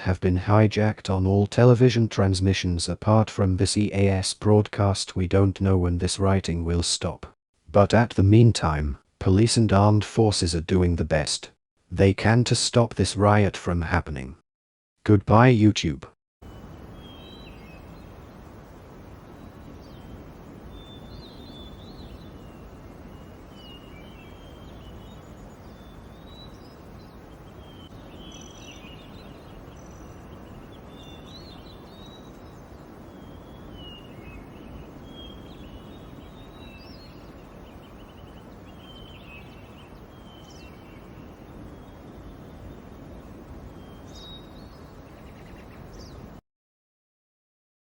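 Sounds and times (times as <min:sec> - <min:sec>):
small birds chirping: 0:16.4 - 0:46.4.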